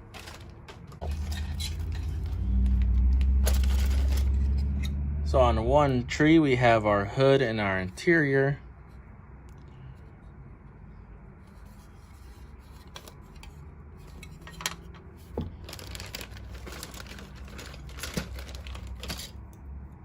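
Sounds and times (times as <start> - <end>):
plastic bag crinkling: 0.0 - 4.5, 15.5 - 19.4.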